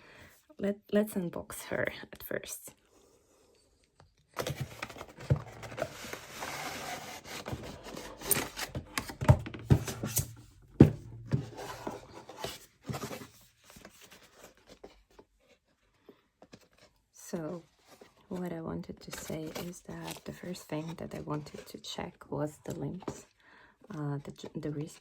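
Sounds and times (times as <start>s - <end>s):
packaging rubbing and rustling: 4.4s - 10.4s.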